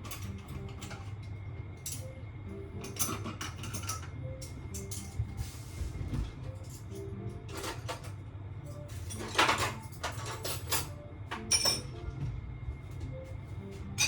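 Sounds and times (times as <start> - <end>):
steady low hum: 0.0 - 14.0
objects clattering: 7.5 - 8.2, 8.9 - 12.0.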